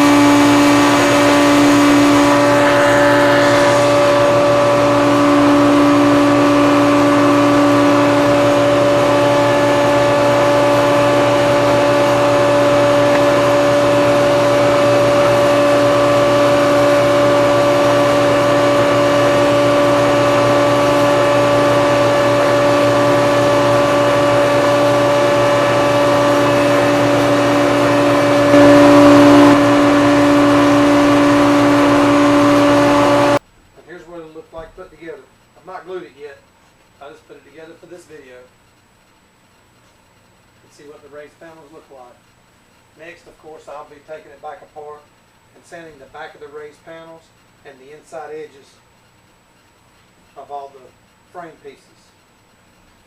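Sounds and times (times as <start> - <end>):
router spinning: 0.0 - 33.4.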